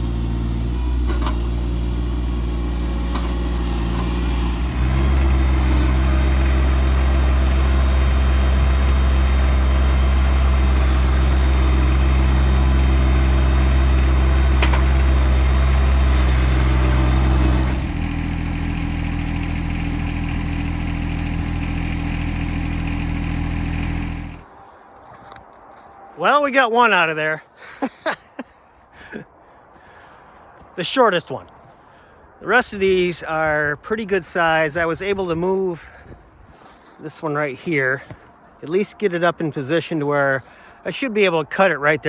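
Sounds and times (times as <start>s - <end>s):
tractor engine running: 0.0s - 24.5s.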